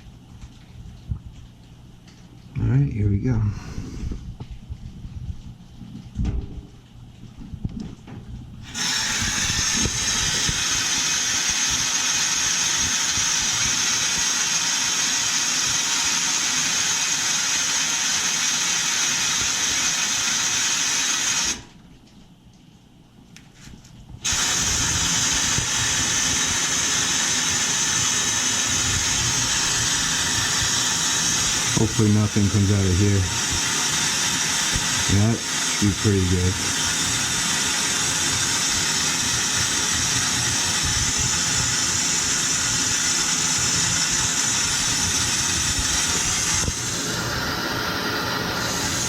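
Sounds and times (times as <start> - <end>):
compressed air hissing into tank: 8.6 - 21.7, 24.2 - 49.0.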